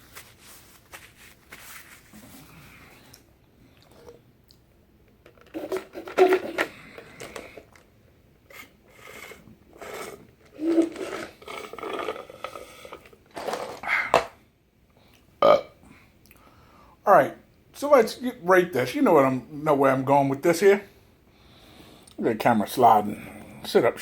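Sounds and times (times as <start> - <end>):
man chewing: 2.9 - 4.6, 8.5 - 13.2.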